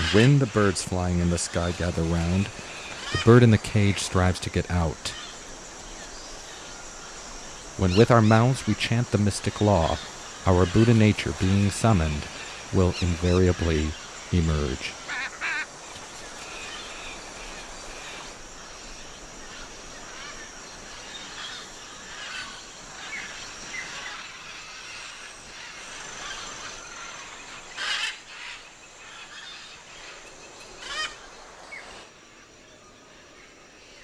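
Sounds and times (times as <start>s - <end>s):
birds calling: 0.0s - 32.0s
steady hiss: 0.0s - 34.0s.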